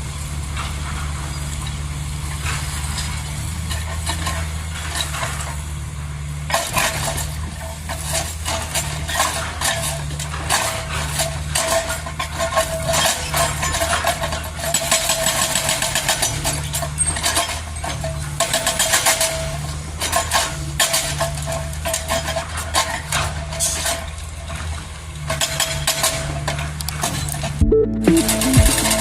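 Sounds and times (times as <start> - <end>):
excavator diesel engine running: 27.6 - 29.0.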